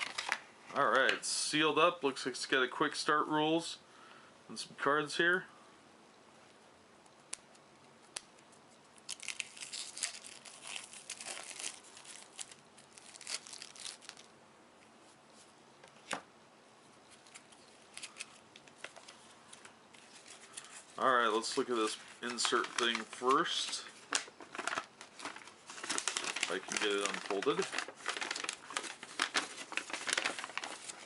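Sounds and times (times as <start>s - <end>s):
wrapping tearing and crinkling: 0.0s - 0.5s, 8.0s - 14.3s, 17.2s - 31.0s.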